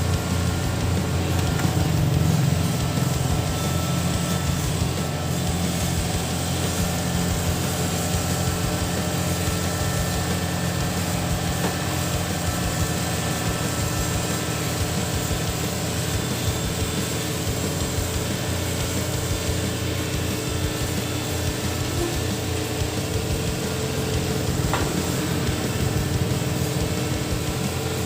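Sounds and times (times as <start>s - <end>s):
diesel engine running: 0.0s - 28.0s.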